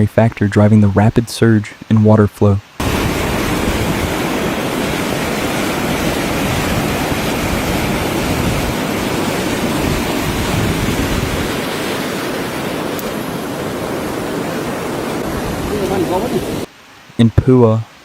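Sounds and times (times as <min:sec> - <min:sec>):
rushing floodwater: 0:00.8 - 0:18.0.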